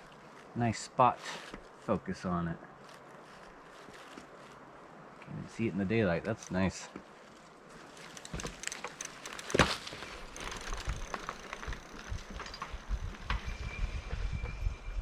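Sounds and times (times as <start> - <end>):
tyres and wind rumble: 0.0 - 15.0
bike rattling and clicking: 6.2 - 14.9
faint high whine: 10.5 - 15.0.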